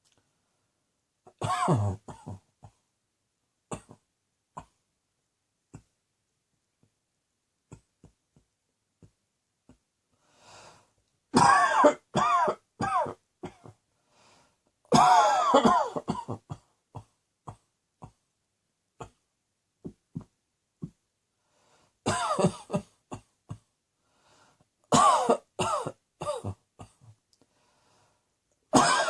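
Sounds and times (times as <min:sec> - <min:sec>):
person coughing: 0:01.3 - 0:02.8, 0:03.7 - 0:04.0, 0:11.4 - 0:13.8, 0:14.9 - 0:18.2, 0:22.1 - 0:23.7, 0:24.9 - 0:27.2, 0:28.7 - 0:29.0
breath: 0:10.1 - 0:11.0, 0:13.9 - 0:14.7, 0:21.4 - 0:22.0, 0:24.0 - 0:24.7, 0:27.4 - 0:28.4.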